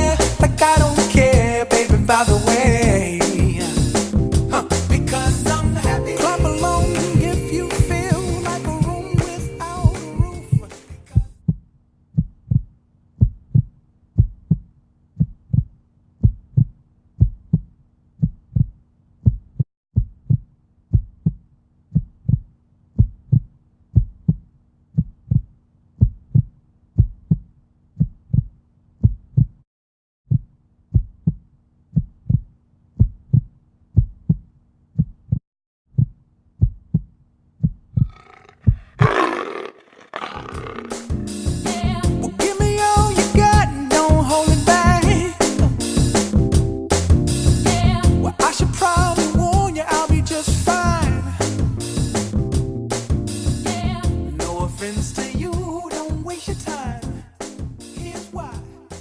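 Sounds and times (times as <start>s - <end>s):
heartbeat-like low thumps: 0.0s - 10.7s, 12.2s - 14.6s.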